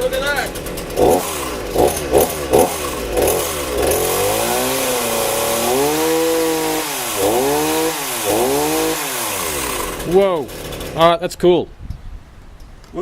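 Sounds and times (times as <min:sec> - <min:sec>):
chainsaw revving: 0:00.0 - 0:11.2.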